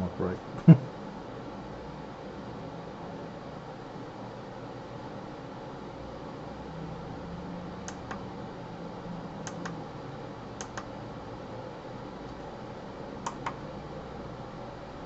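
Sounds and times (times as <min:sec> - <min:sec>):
steady low hum: 0:00.0 - 0:15.0
pushbuttons clicking: 0:10.6 - 0:10.9, 0:13.3 - 0:13.6.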